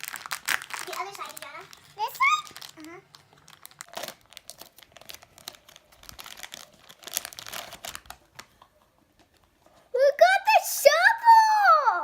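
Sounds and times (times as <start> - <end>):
plastic packaging crinkling: 0.0 - 9.5.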